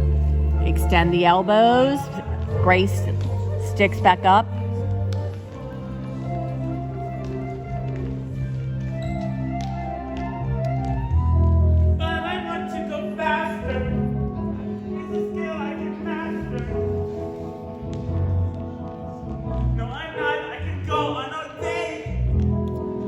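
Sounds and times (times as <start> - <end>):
steady bass line: 0.0 - 5.2
show tune with singers: 19.8 - 22.4.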